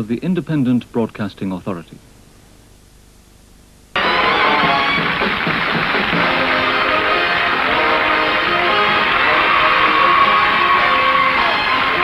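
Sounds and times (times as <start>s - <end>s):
television ident music: 4.0s - 12.0s.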